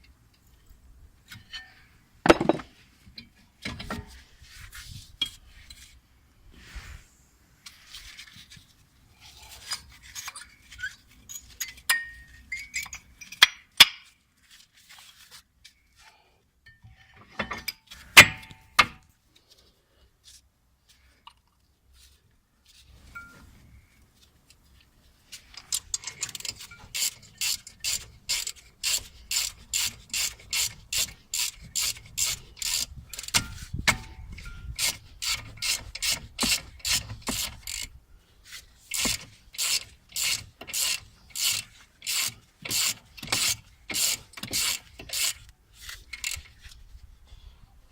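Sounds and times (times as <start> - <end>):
hand tools clinking on metal: 11.3 - 13.7
ratchet wrench clicking: 25.6 - 38.0, 38.9 - 46.5.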